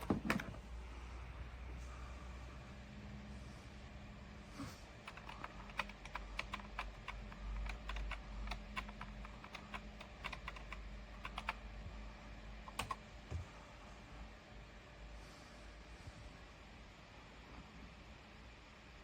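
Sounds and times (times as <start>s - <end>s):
low steady hum: 0.0s - 19.0s
typing on computer keyboard: 5.0s - 11.6s, 12.6s - 13.0s.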